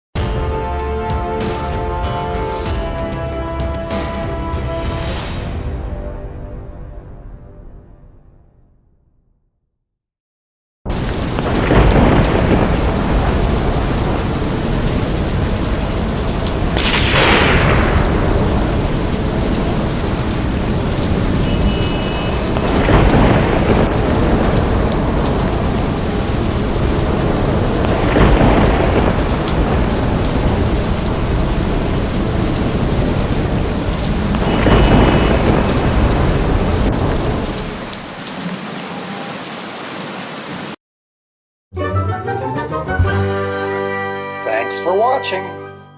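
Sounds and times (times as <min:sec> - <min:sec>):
thunder rolling: 0:10.9 - 0:39.3
heavy rain: 0:10.9 - 0:40.8.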